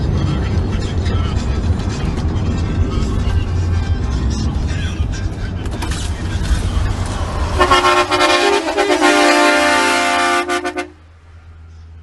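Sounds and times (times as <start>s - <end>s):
train horn multi-tone chord: 7.4s - 11.0s.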